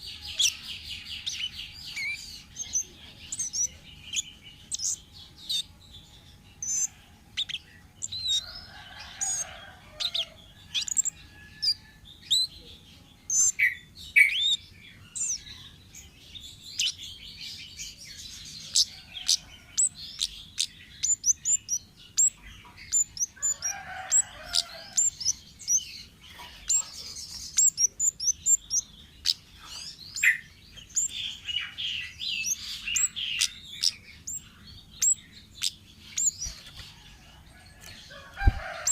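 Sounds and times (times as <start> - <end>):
songbird chirps and whistles: 13.3 - 17.0.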